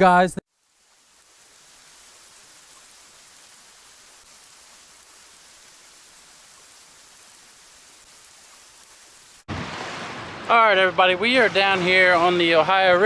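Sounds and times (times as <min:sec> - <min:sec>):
steady hiss: 0:00.5 - 0:09.5.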